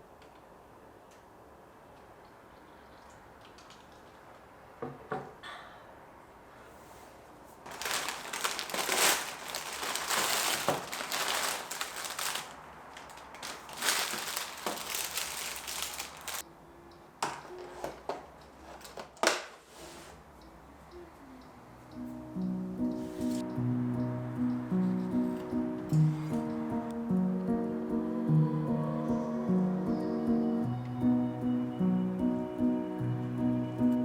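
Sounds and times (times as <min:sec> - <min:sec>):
packaging crinkling and rustling: 0:07.6 - 0:16.4, 0:23.0 - 0:23.4.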